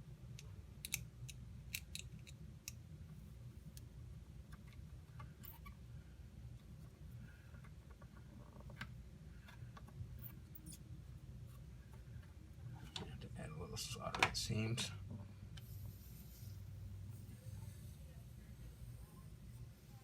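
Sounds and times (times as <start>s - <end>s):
low steady hum: 0.0s - 20.0s
soldering tools clicking: 0.4s - 2.8s.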